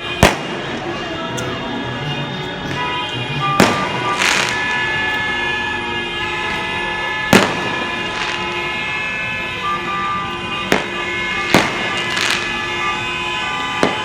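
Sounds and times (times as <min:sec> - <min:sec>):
firecracker bangs: 0:00.0 - 0:01.0, 0:02.6 - 0:05.4, 0:06.4 - 0:09.1, 0:10.5 - 0:14.0
car horns blaring: 0:00.0 - 0:14.0.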